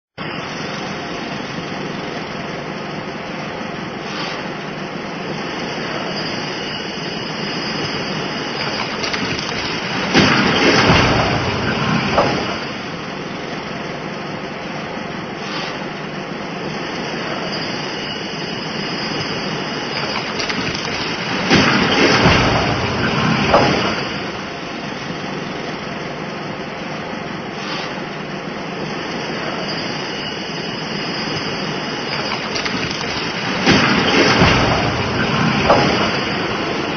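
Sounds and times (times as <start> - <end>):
construction machinery: 0.2 - 36.9.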